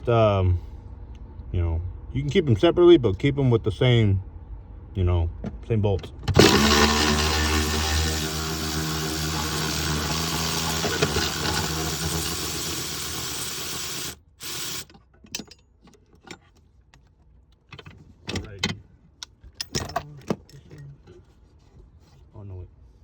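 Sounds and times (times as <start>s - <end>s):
mechanical hum: 0.0s - 15.2s
hand tools clicking and knocking: 6.3s - 16.5s.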